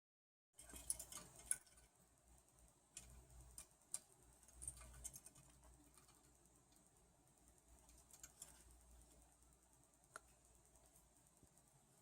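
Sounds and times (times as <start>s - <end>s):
faint light clicks and taps: 10.1s - 11.0s.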